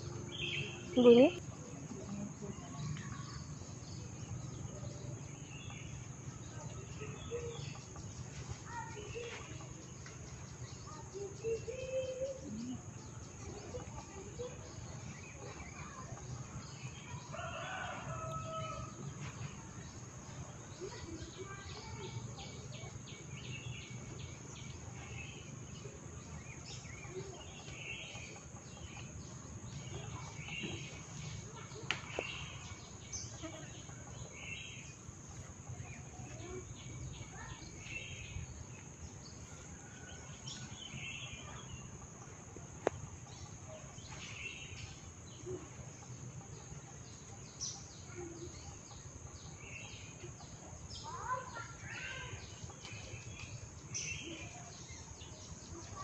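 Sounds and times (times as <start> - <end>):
birds chirping: 0.0 - 56.0.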